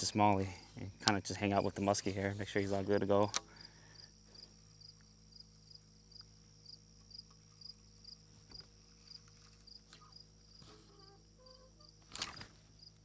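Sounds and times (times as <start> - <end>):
insects chirping: 0.0 - 13.0.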